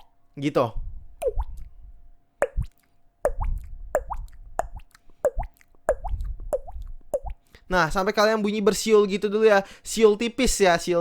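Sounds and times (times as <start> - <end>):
beatboxed water-drop sound: 1.2 - 1.7, 2.4 - 7.5.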